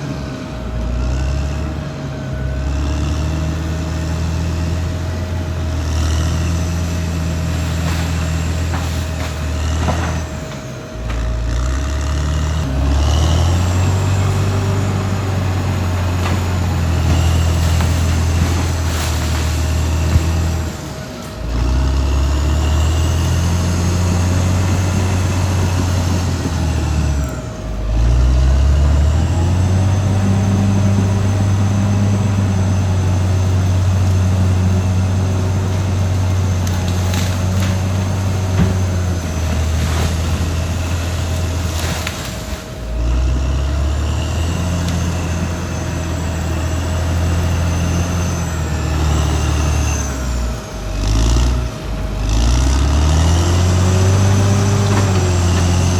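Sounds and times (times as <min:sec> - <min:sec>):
bulldozer diesel engine under load: 0:00.0 - 0:55.9
steady whine: 0:00.0 - 0:55.9.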